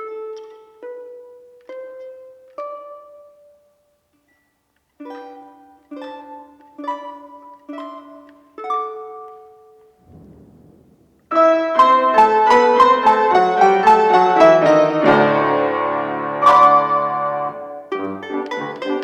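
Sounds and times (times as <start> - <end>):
held low piano notes: 10.0 - 18.0
piano playing fast runs: 10.0 - 18.2.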